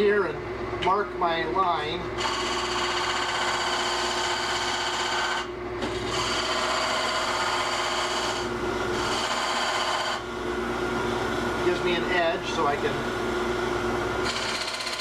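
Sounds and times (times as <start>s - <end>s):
chisel scraping spinning wood: 2.2s - 10.2s, 14.2s - 15.0s
wood lathe humming: 2.2s - 10.4s, 14.2s - 15.0s.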